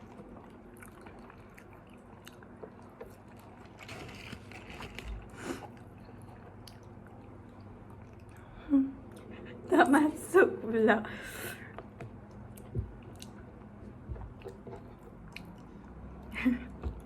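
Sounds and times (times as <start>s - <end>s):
chewing food: 0.0s - 9.4s, 11.8s - 17.0s
rustling: 3.7s - 5.4s.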